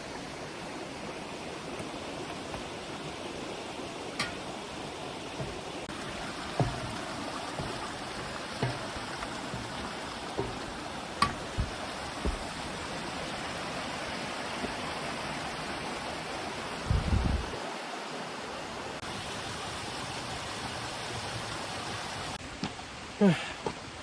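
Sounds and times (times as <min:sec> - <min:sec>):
mountain stream rushing: 0:00.0 - 0:24.0
dull low thumps: 0:05.4 - 0:13.0.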